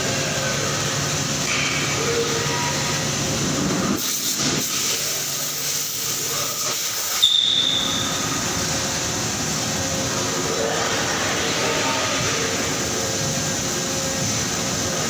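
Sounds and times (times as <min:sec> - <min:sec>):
factory machinery hum: 0:00.0 - 0:15.0.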